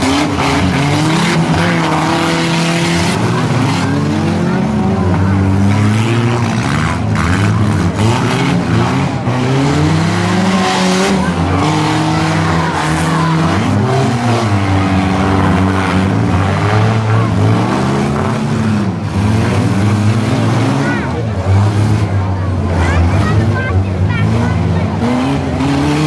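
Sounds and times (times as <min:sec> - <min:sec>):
car engines revving: 0:00.0 - 0:26.0
tires skidding on dirt: 0:00.0 - 0:26.0.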